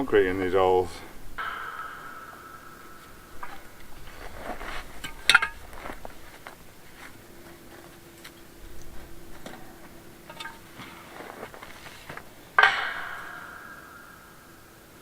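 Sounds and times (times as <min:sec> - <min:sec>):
loud sharp knock: 0:01.4 - 0:04.9, 0:12.6 - 0:14.7.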